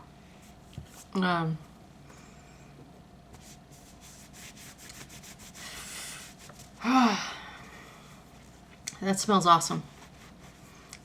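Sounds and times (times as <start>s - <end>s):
hands rubbing hair: 3.4s - 6.8s.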